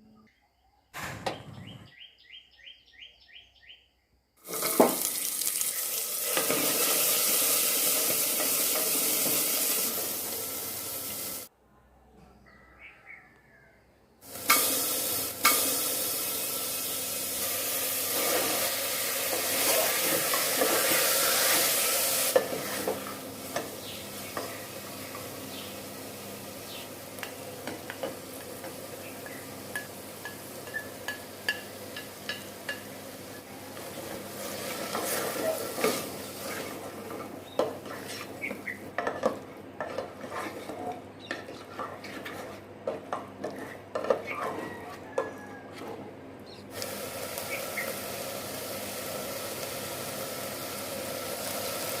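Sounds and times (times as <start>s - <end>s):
food sizzling in hot oil: 4.4s - 11.5s, 14.2s - 39.2s, 46.7s - 52.0s
spoon scraping and tapping pot: 27.2s - 32.9s, 37.5s - 46.0s.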